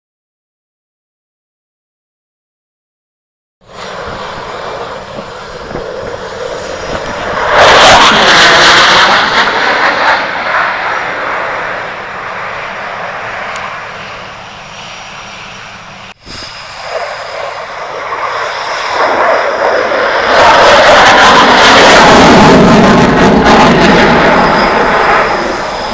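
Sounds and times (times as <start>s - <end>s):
aircraft engine roar passing: 3.6s - 25.9s.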